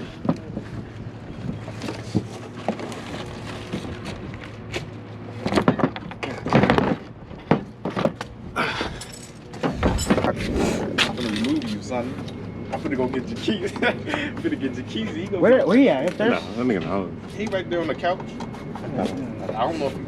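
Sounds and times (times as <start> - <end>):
car parts and tools rattling: 5.5 - 11.6.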